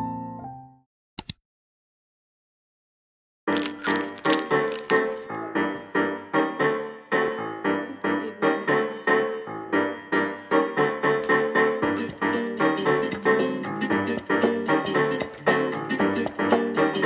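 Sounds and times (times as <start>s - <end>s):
piano playing rhythmic pattern: 3.5s - 17.0s.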